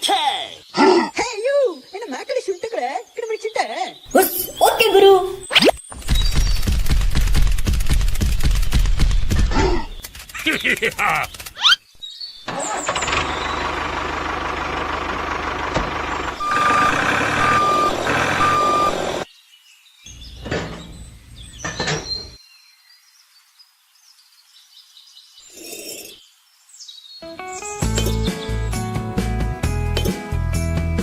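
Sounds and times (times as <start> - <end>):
truck engine running: 12.5 - 19.2
reversing alarm beeping: 16.4 - 19.2.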